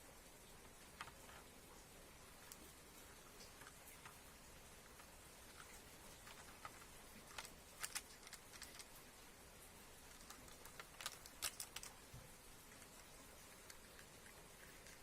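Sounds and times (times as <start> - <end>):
low background hiss: 0.0 - 15.0
light clicks and taps: 3.4 - 9.0.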